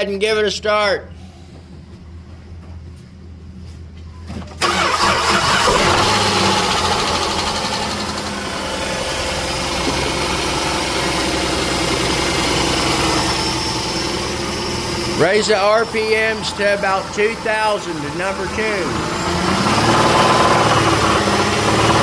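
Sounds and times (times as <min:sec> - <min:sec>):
car engine cranking and starting: 0:04.4 - 0:22.0.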